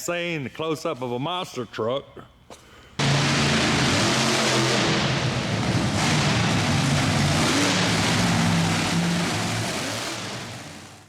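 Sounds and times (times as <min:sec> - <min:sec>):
monster truck engine running: 0:03.0 - 0:11.0.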